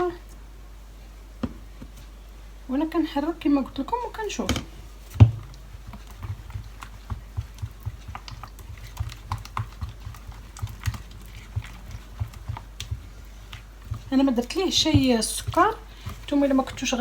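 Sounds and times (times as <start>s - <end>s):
utensil knocking against a pot: 13.8s - 17.0s.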